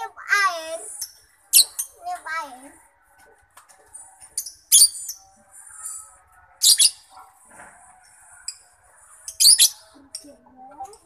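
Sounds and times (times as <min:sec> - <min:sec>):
faint bird chatter: 0:00.0 - 0:07.4, 0:08.0 - 0:11.0
bird shrill chirps: 0:09.2 - 0:10.3.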